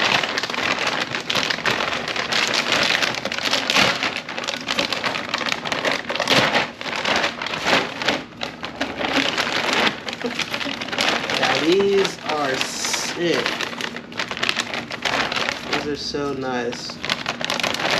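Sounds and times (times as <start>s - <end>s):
packaging crinkling and crackling: 0.0s - 17.9s.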